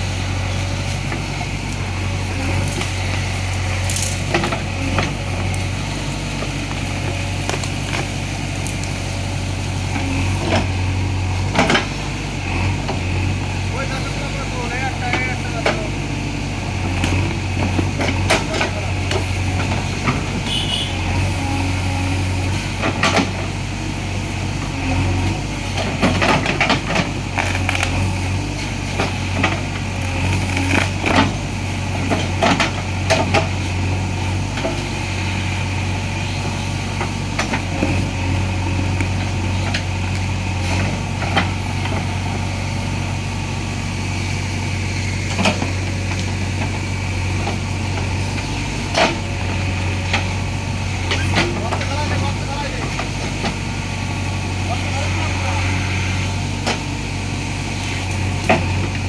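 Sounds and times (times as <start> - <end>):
backhoe diesel engine running: 0.0 - 59.0.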